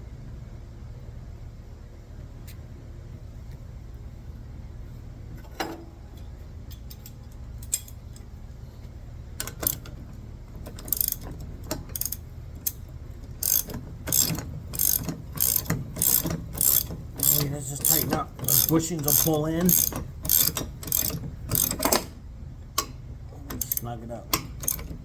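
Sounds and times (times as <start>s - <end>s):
ratchet wrench clicking: 10.7s - 12.8s, 13.4s - 22.1s, 23.5s - 25.0s.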